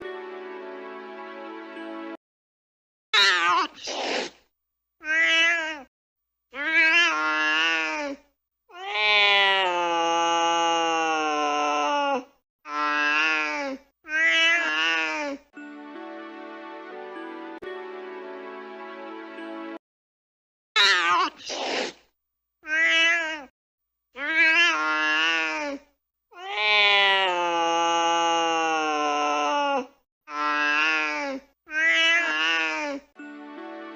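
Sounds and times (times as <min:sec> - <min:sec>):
cat hissing: 0:03.6 - 0:04.4, 0:21.2 - 0:22.0
cat yowling meows: 0:05.0 - 0:05.9, 0:06.6 - 0:08.0, 0:08.7 - 0:09.8, 0:14.1 - 0:15.1, 0:22.6 - 0:23.5, 0:24.2 - 0:25.6, 0:26.4 - 0:27.5, 0:31.7 - 0:32.8.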